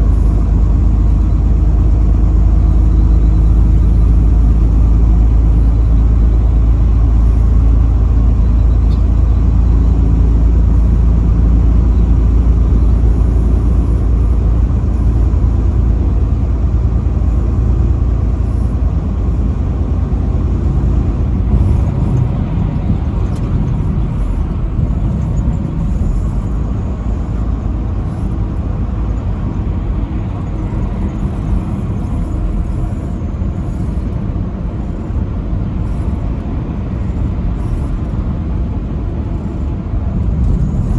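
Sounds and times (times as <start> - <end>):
road rumble: 0.0 - 40.9
truck engine drone: 0.0 - 40.9.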